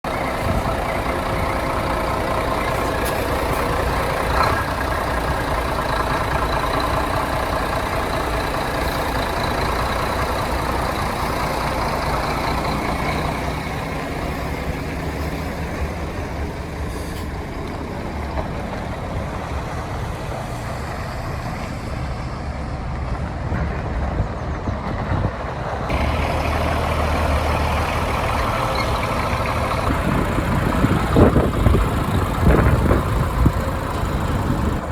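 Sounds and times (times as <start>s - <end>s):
engine knock: 0.0s - 16.5s, 25.9s - 34.9s
diesel truck engine idling: 0.0s - 22.4s, 25.5s - 34.9s.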